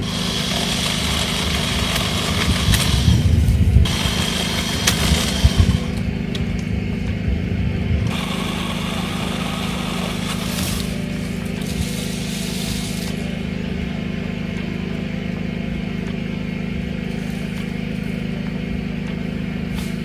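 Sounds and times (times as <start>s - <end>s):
chainsaw cutting branches: 0.0s - 20.0s.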